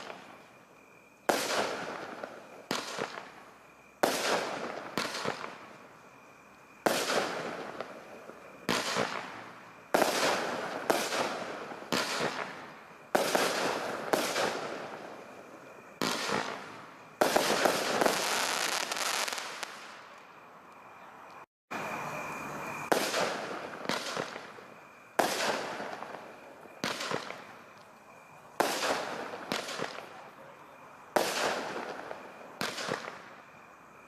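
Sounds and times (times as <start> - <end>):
fireworks banging: 1.2 - 5.8, 6.8 - 20.1, 22.8 - 27.9, 28.5 - 30.4.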